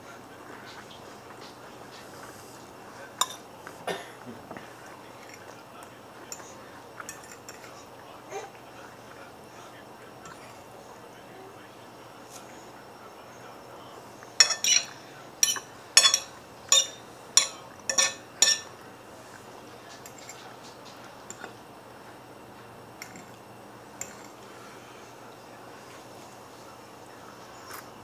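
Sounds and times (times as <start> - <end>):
utensil clinking against dish: 3.1 - 7.9, 14.2 - 18.8, 19.8 - 21.6, 23.0 - 23.4, 24.0 - 24.5.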